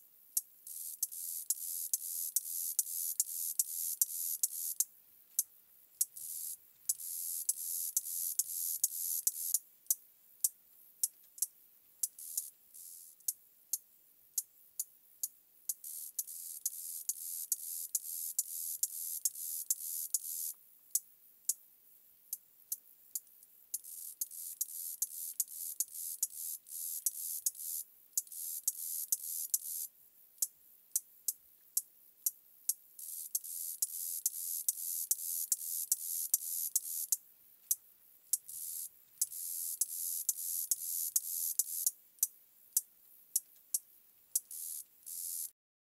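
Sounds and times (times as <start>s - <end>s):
beetle sharp clicks: 0.4s - 13.8s, 15.7s - 21.6s, 22.3s - 30.5s, 31.3s - 43.8s, 44.4s - 45.5s
beetle high-pitched buzz: 0.7s - 4.9s, 6.0s - 10.0s, 11.4s - 13.4s, 15.7s - 21.0s, 23.1s - 30.5s, 33.0s - 42.3s, 44.4s - 45.6s.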